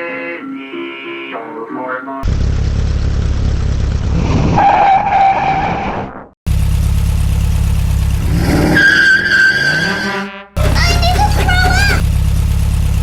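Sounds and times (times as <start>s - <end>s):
truck engine rumble: 2.2s - 5.4s, 6.5s - 13.0s
truck horn tone: 8.1s - 12.3s
pitch-shifted horn tone: 8.6s - 12.0s.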